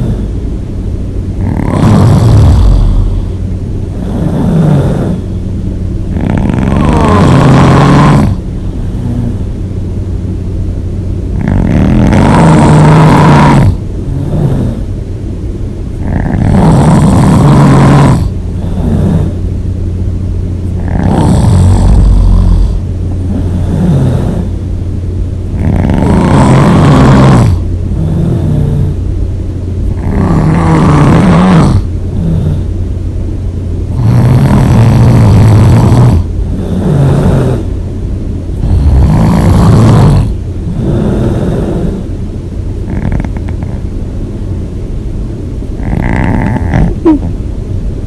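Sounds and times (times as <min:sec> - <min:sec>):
person snoring loudly: 0:00.0 - 0:00.4, 0:01.4 - 0:05.4, 0:06.1 - 0:09.5, 0:11.3 - 0:14.9, 0:16.0 - 0:19.4, 0:20.7 - 0:24.6, 0:25.5 - 0:29.0, 0:29.9 - 0:32.7, 0:33.9 - 0:37.7, 0:38.6 - 0:42.1, 0:42.8 - 0:43.9, 0:45.8 - 0:47.4
quiet breathing: 0:00.0 - 0:00.5, 0:08.2 - 0:09.6, 0:18.2 - 0:19.4.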